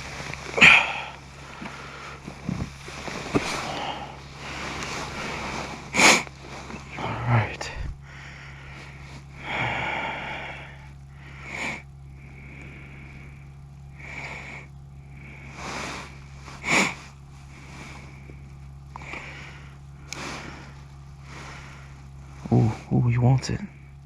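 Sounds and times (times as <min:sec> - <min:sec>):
steady low hum: 0:00.0 - 0:24.0
person sniffing: 0:03.4 - 0:06.9.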